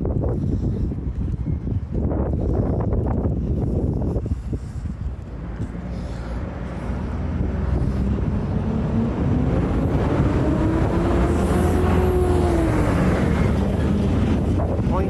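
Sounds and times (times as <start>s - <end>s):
vehicle passing close by: 5.3s - 15.0s.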